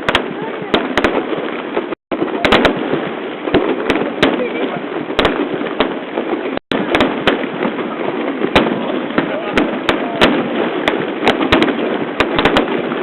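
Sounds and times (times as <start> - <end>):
fireworks bangs: 0.0 - 13.0
crowd murmur: 0.2 - 1.0, 2.2 - 5.5, 7.7 - 12.0.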